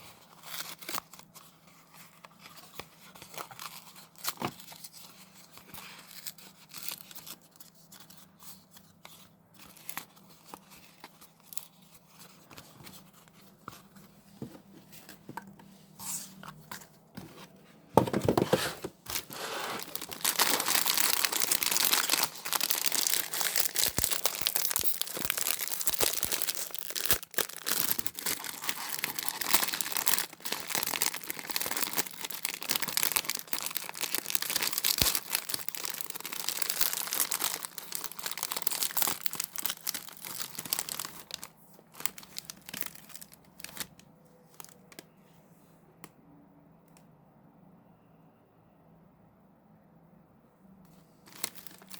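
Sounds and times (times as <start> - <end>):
plastic packaging tearing and crinkling: 0.0 - 1.5, 18.3 - 44.0, 51.2 - 51.9
plastic packaging rustling: 0.0 - 45.0, 51.2 - 51.9.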